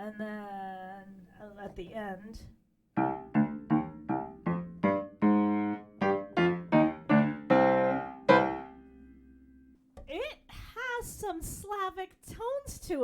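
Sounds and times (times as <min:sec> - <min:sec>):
piano notes and chords: 0:03.0 - 0:09.8.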